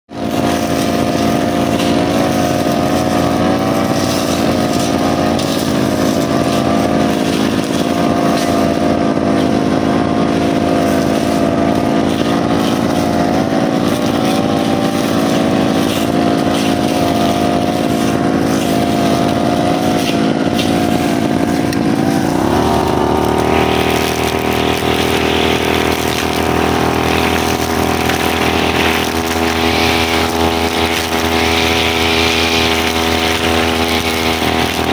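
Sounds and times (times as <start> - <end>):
brushcutter engine running: 0.1 - 34.9.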